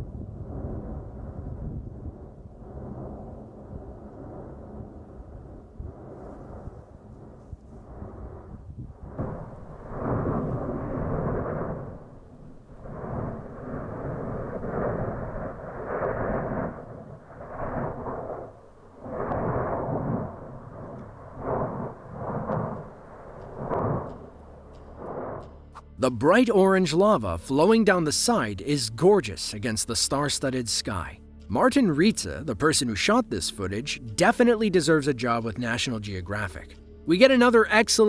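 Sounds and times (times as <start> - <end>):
deep volcanic rumble: 0.0 - 25.7.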